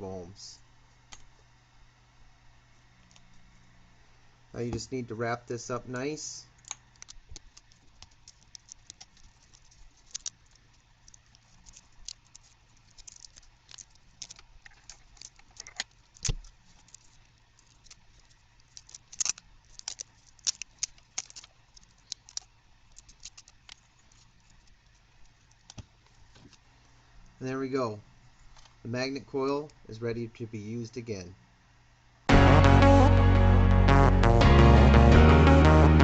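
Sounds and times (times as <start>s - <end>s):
tape and wire crinkling: 6.5s - 27.4s.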